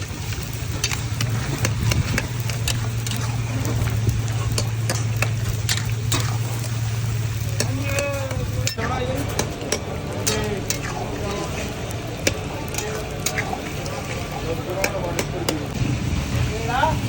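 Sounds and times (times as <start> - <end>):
steady low hum: 0.0 - 17.0
metal spatula scraping a wok: 8.4 - 15.3.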